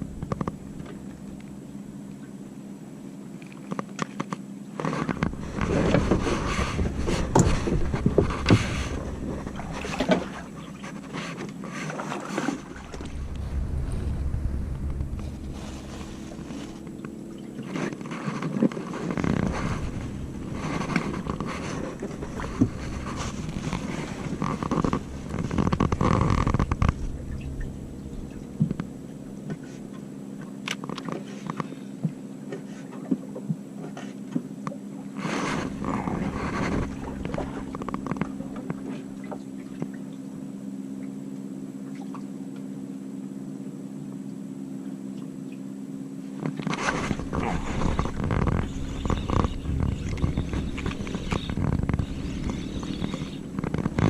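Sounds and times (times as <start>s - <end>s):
boat engine hum: 0.0s - 54.0s
wind buffeting microphone: 5.2s - 11.0s, 12.5s - 30.1s, 35.5s - 38.8s, 46.6s - 54.0s.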